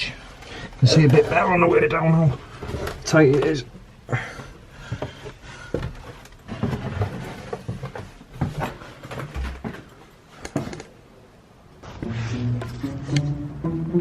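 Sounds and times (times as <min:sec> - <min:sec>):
footsteps down a staircase: 0:02.3 - 0:11.0.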